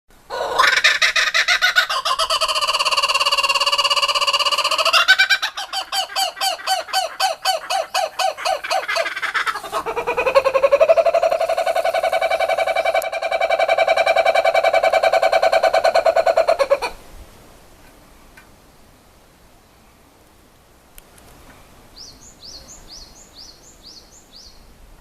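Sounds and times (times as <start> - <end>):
kookaburra laughing call: 0.3 - 17.0.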